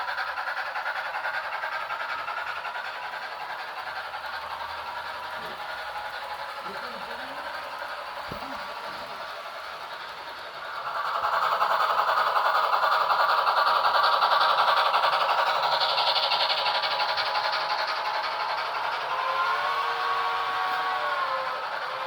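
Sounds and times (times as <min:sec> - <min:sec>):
motor running: 0:03.0 - 0:13.1, 0:16.6 - 0:22.0.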